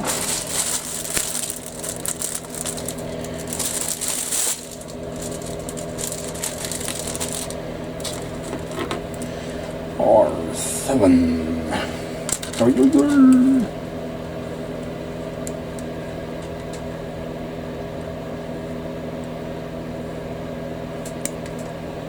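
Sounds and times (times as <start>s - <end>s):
plastic crinkling and rustling: 0.0s - 9.3s, 12.3s - 13.0s
steady hum: 0.0s - 22.0s.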